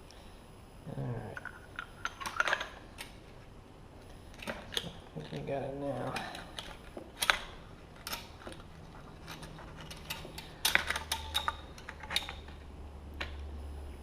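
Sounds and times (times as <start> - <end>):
faint low hum: 0.0 - 14.0
metallic clicks of gun parts: 6.0 - 12.6.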